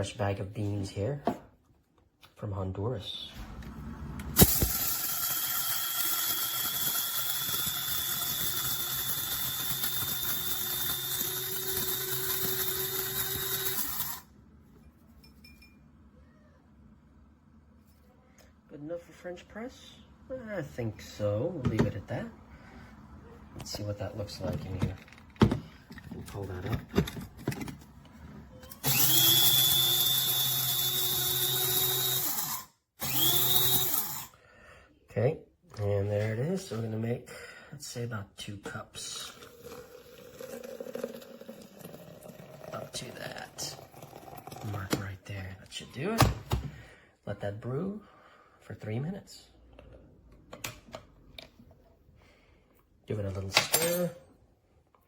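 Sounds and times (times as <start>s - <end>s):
coffee grinder whining: 4.3s - 14.3s, 28.7s - 34.4s.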